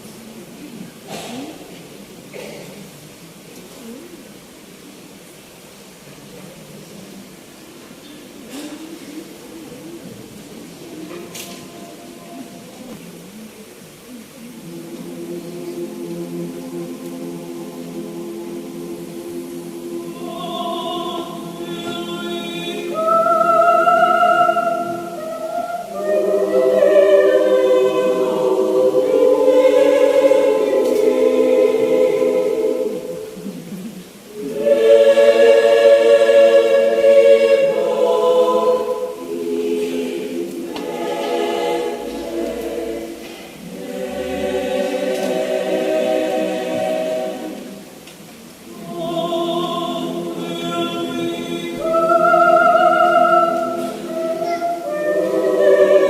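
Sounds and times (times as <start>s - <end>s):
church choir singing: 14.6s - 33.6s, 34.3s - 56.0s.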